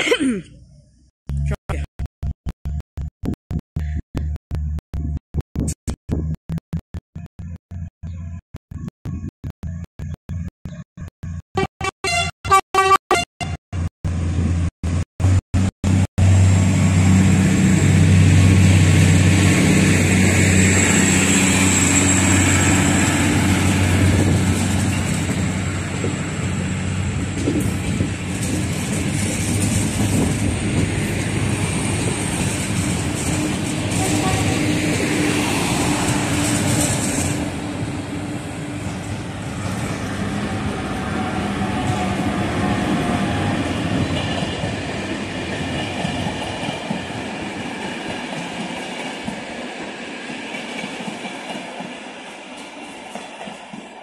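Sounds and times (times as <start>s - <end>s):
chopped stutter of sound: 1.3s - 14.2s
train engine drone: 13.8s - 54.0s.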